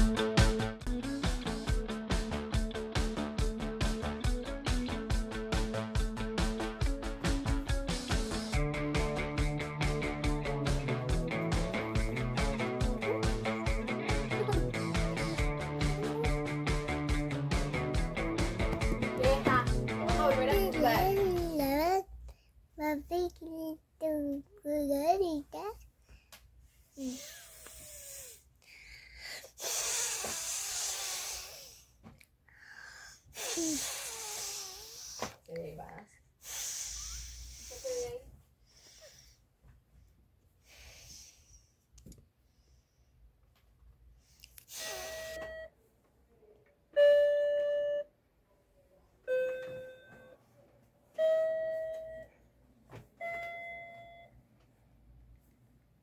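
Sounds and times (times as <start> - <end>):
child making hissing noises: 27.0 - 28.5, 29.2 - 32.0, 32.6 - 35.4, 36.4 - 38.3, 44.6 - 45.4
electronic chime tones: 49.3 - 50.3.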